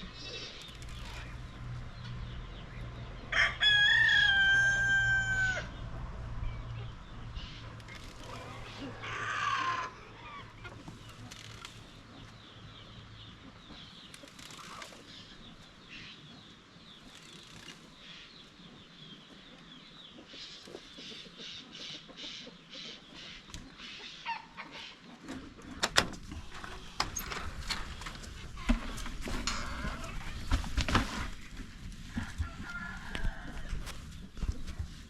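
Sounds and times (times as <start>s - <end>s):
chickens clucking and calling: 18.4s - 25.8s, 26.4s - 35.0s.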